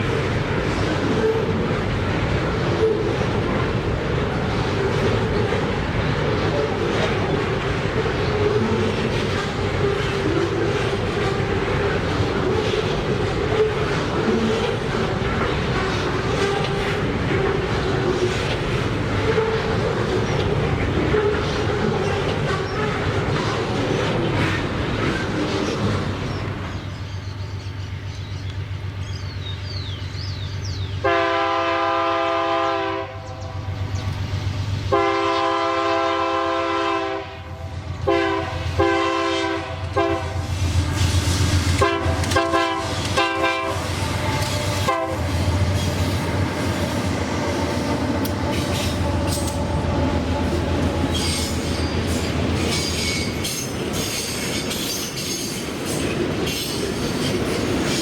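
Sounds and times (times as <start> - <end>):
train wheels clacking: 0.0 - 26.8, 38.0 - 58.0
locomotive engine rumbling: 0.0 - 58.0
train horn blasts: 15.3 - 17.8, 31.0 - 33.8, 34.9 - 40.5, 41.8 - 46.0
high wheel squeal: 51.1 - 55.7.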